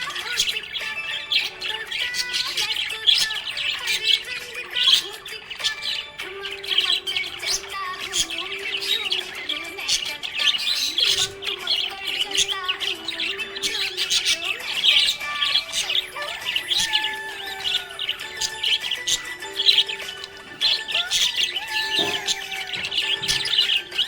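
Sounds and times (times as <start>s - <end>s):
budgies chirping and warbling: 0.0s - 24.0s.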